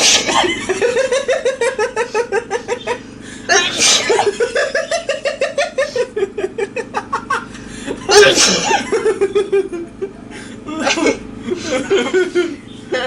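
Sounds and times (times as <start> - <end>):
girl sneezing: 0.0 - 0.4, 3.5 - 4.4, 8.1 - 8.8
rapid pulsing laughter: 0.0 - 13.0.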